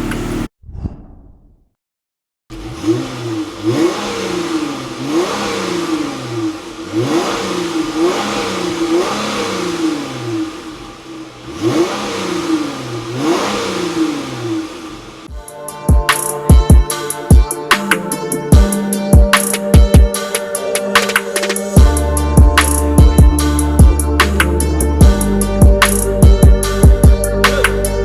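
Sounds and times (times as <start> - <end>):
car engine revving: 2.5 - 15.3, 20.7 - 28.0.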